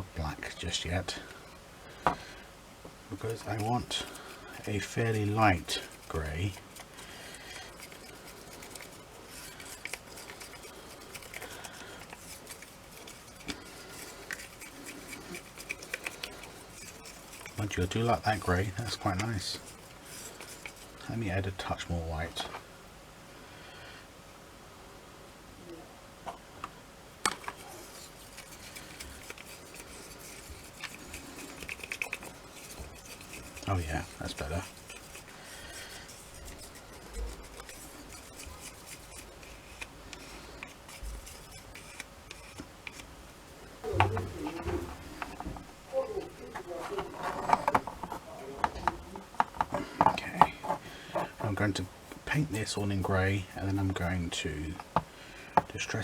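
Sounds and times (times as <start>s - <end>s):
paint stirring and scraping: 0.0s - 22.7s, 27.2s - 56.0s.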